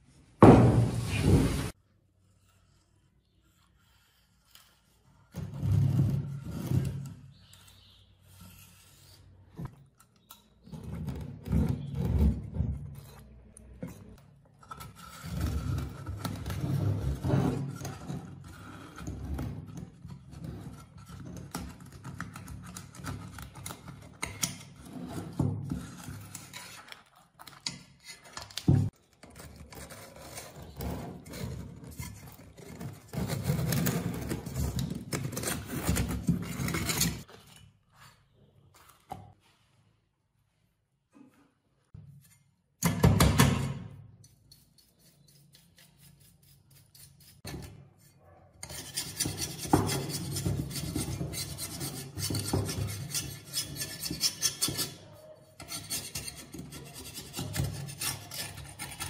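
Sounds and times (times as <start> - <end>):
hand tools scraping: 29.2 - 38.3, 44.2 - 59.0.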